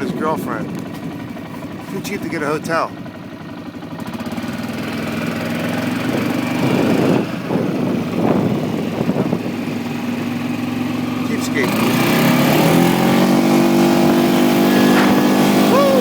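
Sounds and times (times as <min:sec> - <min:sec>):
atv engine running: 0:00.0 - 0:16.0.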